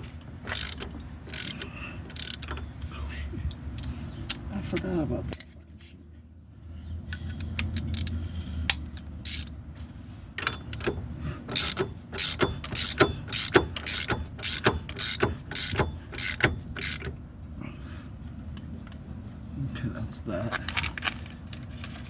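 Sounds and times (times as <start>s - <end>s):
ratchet wrench clicking: 0.5s - 2.6s, 7.2s - 9.5s, 10.4s - 17.1s.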